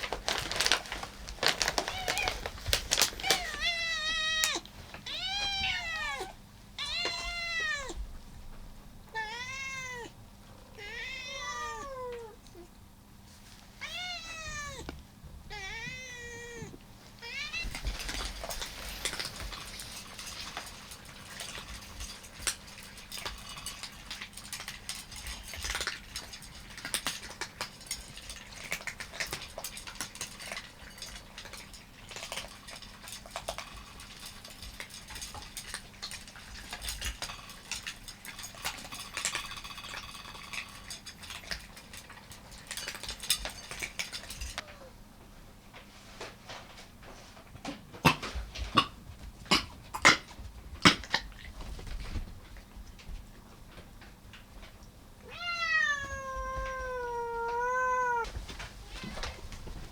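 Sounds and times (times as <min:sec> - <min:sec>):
cats crunching food: 0:00.0 - 0:12.7, 0:17.2 - 0:59.9
cat meowing: 0:01.8 - 0:08.1, 0:09.1 - 0:12.7, 0:13.8 - 0:17.9, 0:55.2 - 0:59.2.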